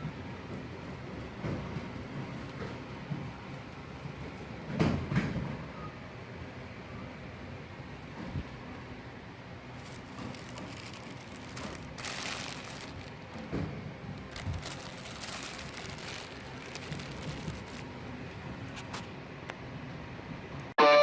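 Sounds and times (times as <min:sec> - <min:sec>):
packaging rustling and crinkling: 0:09.7 - 0:19.1.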